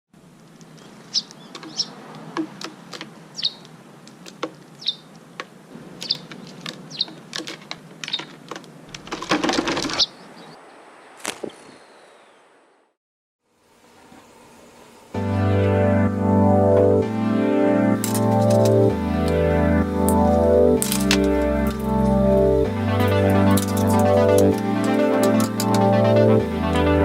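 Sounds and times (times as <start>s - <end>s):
rustling noise: 0.4s - 10.2s
small bird chirping: 0.6s - 3.8s, 4.6s - 7.3s, 8.0s - 8.4s, 9.9s - 10.8s.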